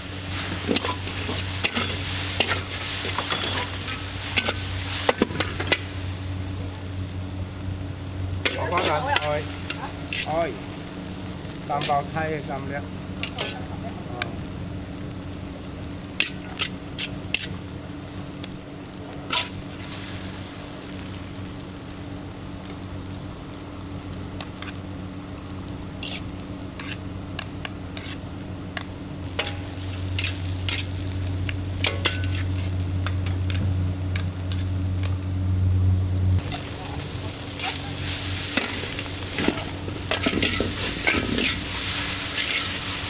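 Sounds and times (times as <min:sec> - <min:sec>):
low steady hum: 0:00.0 - 0:43.0
noodles sizzling in a wok: 0:00.0 - 0:43.0
metal spatula scraping a wok: 0:00.2 - 0:06.0, 0:08.4 - 0:13.8, 0:16.1 - 0:17.6, 0:19.2 - 0:20.3, 0:24.4 - 0:24.8, 0:26.0 - 0:35.2, 0:36.4 - 0:43.0.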